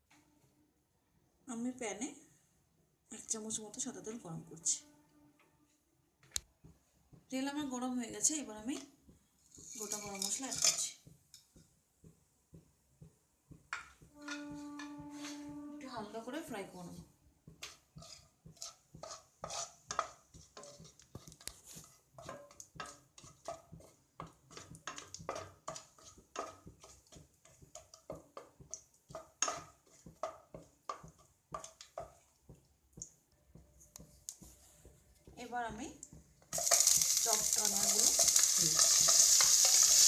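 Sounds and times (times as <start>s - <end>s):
spatula tapping and scraping pan: 6.2s - 40.0s
spices frying in hot oil: 7.1s - 12.2s, 17.4s - 34.6s, 35.2s - 40.0s.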